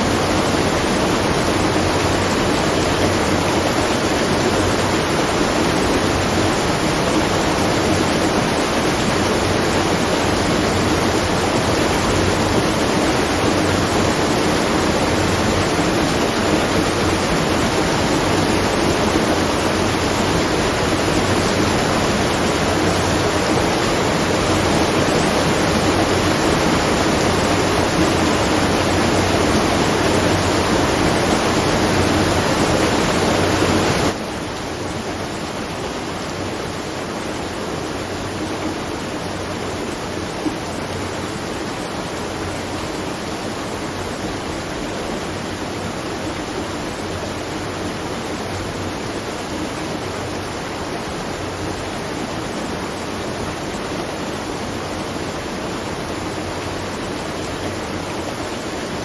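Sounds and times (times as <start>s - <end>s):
water rushing: 0.0s - 59.0s.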